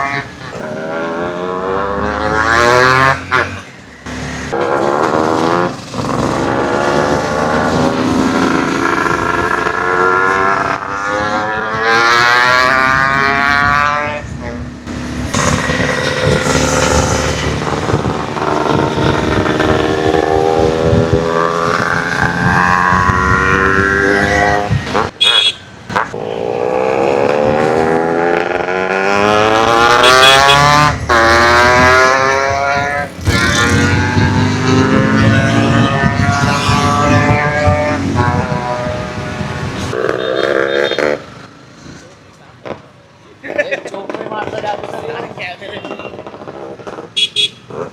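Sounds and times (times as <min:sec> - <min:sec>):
motorcycle engine revving: 0:00.0 - 0:41.8.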